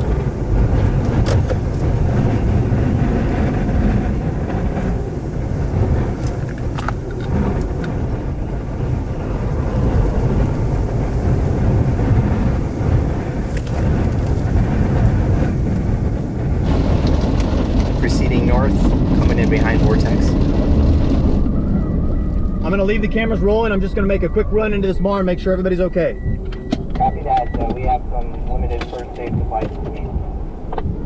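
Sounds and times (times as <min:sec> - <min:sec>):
road noise: 0:00.0 - 0:31.0
strong wind buffeting vehicle: 0:00.0 - 0:31.0
sharp clicks and knocks: 0:26.2 - 0:31.0.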